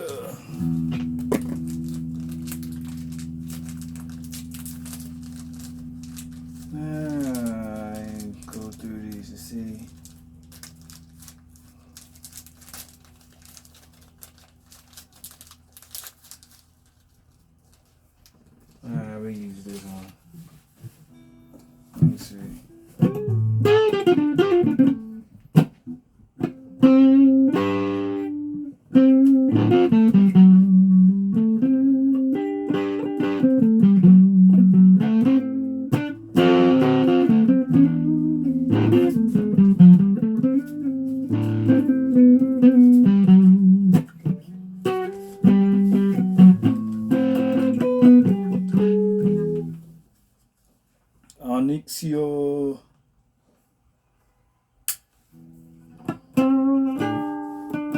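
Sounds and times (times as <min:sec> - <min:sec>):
plucked guitar melody: 0:00.0 - 0:14.5, 0:20.9 - 0:50.0, 0:55.4 - 0:57.9.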